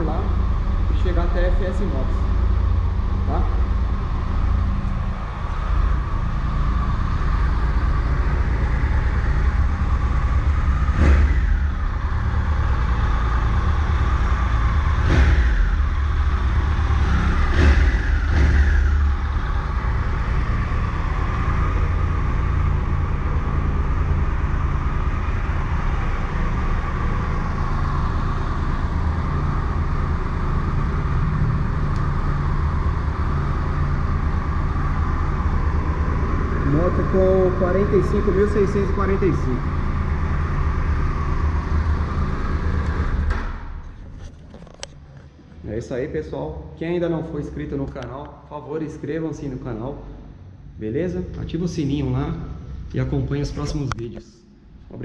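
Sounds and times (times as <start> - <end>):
motorcycle engine idling: 0.0 - 43.2
motorcycle engine revving: 0.0 - 45.2.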